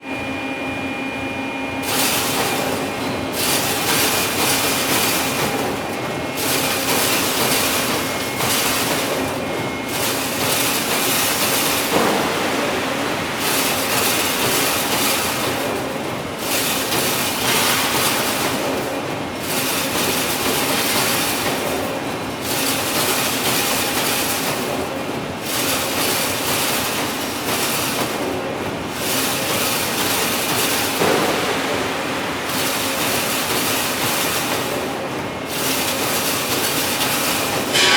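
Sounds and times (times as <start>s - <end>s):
machine metallic clatter: 1.8s - 37.9s.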